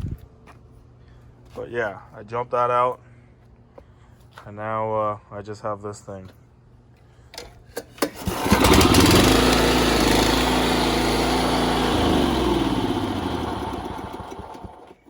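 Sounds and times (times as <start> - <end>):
mower starter clicks: 7.8 - 15.0
lawn mower engine running: 8.0 - 15.0.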